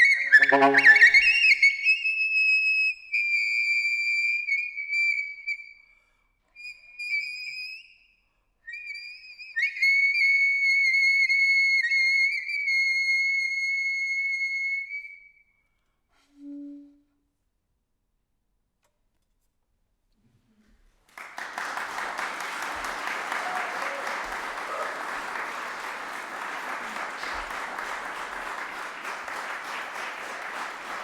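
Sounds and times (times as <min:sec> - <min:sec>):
saxophone high sustained notes: 0:00.0 - 0:01.5.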